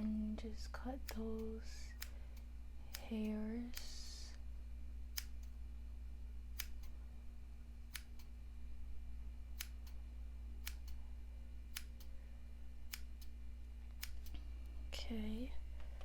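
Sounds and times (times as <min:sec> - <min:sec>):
steady low hum: 0:00.0 - 0:16.0
small scissors snipping: 0:01.0 - 0:04.2, 0:05.1 - 0:05.6, 0:06.5 - 0:07.0, 0:07.9 - 0:08.4, 0:09.5 - 0:10.0, 0:10.6 - 0:11.0, 0:11.7 - 0:12.2, 0:12.9 - 0:14.4.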